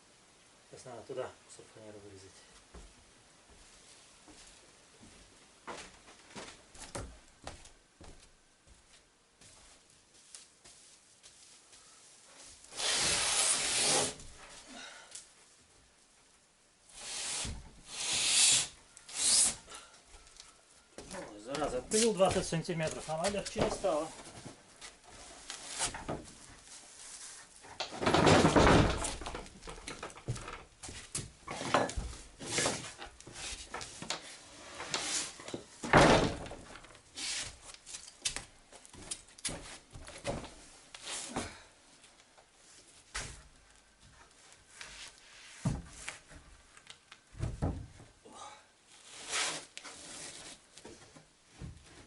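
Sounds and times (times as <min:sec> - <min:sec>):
plywood thuds and knocks: 0:27.9 - 0:30.7, 0:35.8 - 0:36.9, 0:47.3 - 0:48.1.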